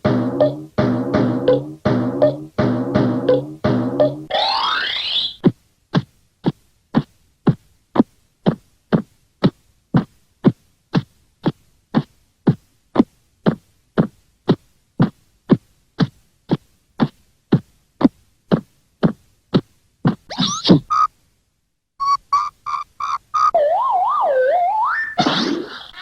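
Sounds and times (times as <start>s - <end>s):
descending cartoon tone: 4.3s - 5.4s, 20.3s - 21.1s, 22.0s - 26.0s.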